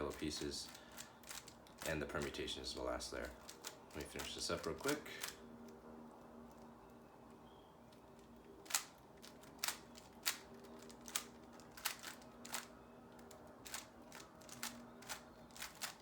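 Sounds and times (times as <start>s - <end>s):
faint steady hum: 0.0s - 16.0s
puzzle cube clicking: 0.1s - 2.4s, 3.4s - 5.4s, 8.0s - 16.0s.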